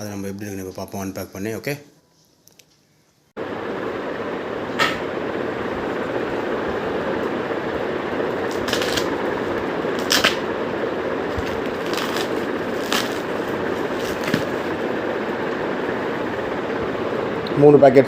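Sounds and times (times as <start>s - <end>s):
steady background hum: 0.0s - 18.0s
packaging rustling and crinkling: 11.3s - 14.8s.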